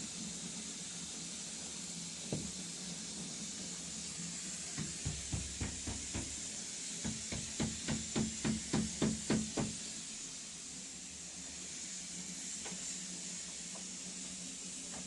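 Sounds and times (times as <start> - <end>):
steady hiss: 0.0 - 15.0
knocking: 4.8 - 6.4, 7.0 - 9.8.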